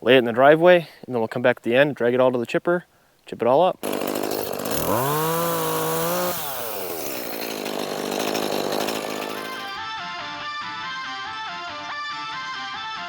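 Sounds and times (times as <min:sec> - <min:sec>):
chainsaw revving: 0:03.8 - 0:09.8.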